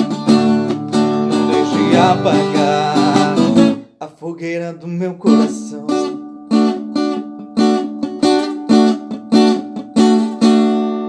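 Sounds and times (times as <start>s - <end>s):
guitar strumming chords: 0.0s - 11.0s.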